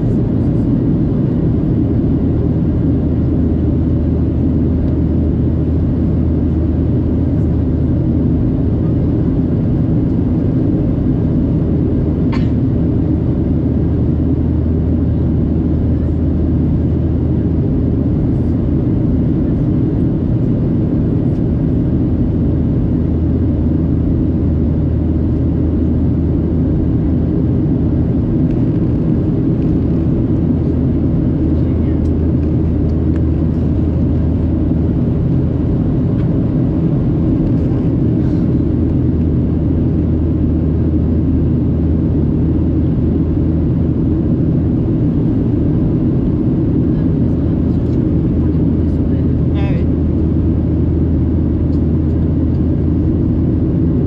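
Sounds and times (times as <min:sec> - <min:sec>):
jet engine cabin rumble: 0:00.0 - 0:54.0.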